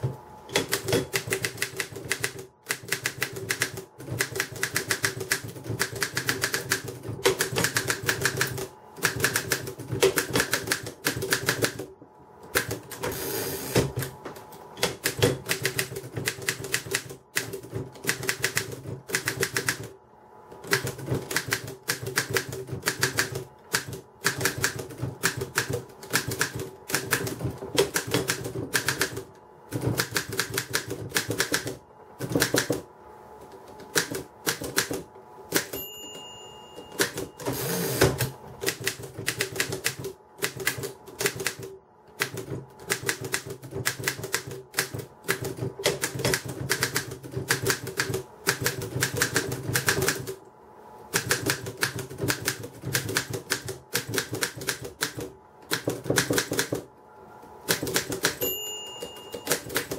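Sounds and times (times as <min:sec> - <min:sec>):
typewriter carriage return: 0:00.5 - 0:11.8, 0:33.8 - 0:41.6, 0:57.7 - 0:59.9
typewriter margin bell: 0:35.6 - 0:38.0, 0:58.2 - 0:59.9.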